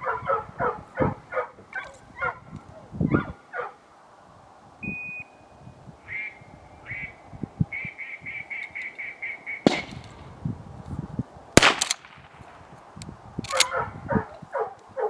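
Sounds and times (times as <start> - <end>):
gunshots: 9.7 - 10.1, 11.6 - 12.3.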